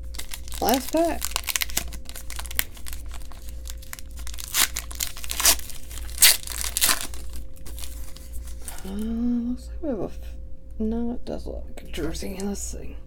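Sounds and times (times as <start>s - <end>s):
wrapper tearing and crinkling: 0.0s - 9.0s.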